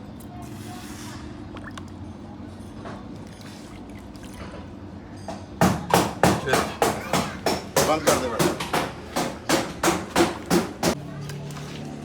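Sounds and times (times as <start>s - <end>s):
loud sharp knocks: 5.6s - 11.0s.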